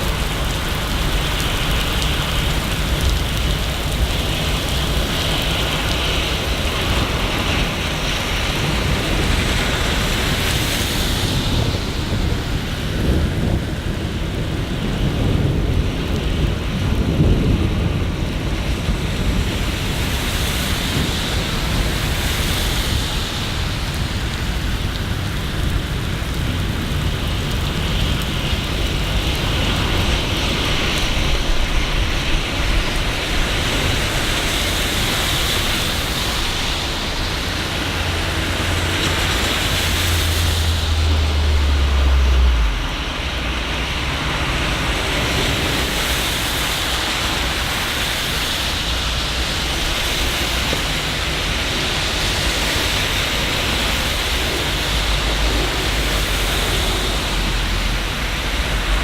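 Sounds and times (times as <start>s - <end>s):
steady rain hissing: 0.0s - 59.0s
low rumble: 36.3s - 45.3s.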